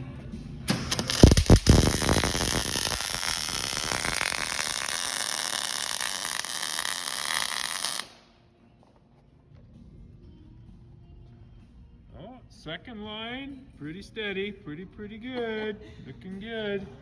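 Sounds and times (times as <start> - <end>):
electric welding arc crackling: 0.7 - 8.2.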